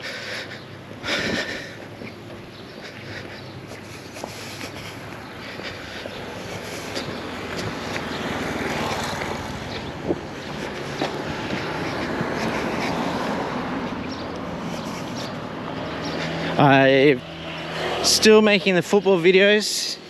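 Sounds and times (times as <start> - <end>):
wind on microphone: 7.0 - 13.8.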